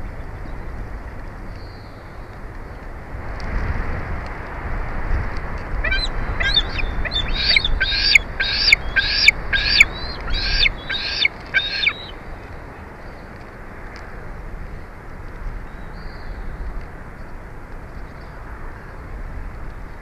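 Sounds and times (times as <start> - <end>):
wind rumble: 0.0 - 20.0
eagle high chirping calls: 5.8 - 12.2.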